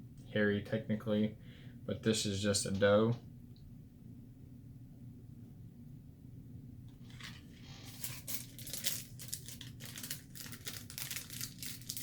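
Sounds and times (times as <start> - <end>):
packaging crinkling: 7.0 - 12.0.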